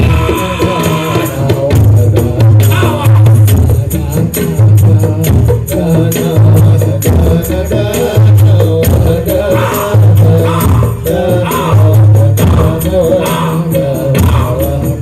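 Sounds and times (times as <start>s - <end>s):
loud music through sound system: 0.0s - 15.0s.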